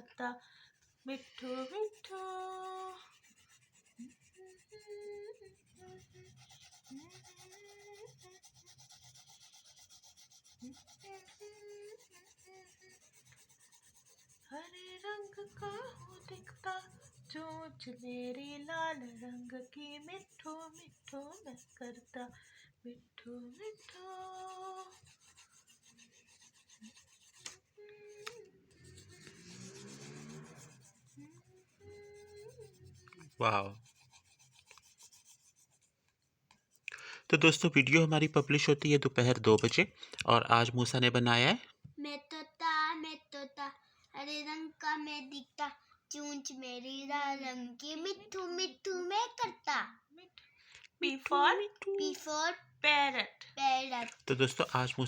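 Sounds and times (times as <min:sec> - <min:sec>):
colouring tool rubbing on paper: 0:00.7 - 0:41.4, 0:54.3 - 0:55.0
person humming: 0:27.8 - 0:30.6.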